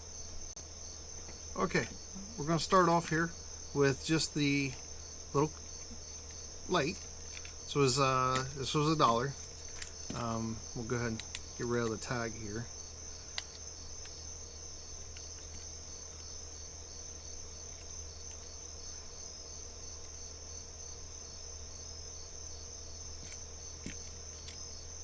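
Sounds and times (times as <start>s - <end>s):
crickets chirping: 0.0s - 25.0s
low hum: 1.3s - 4.4s.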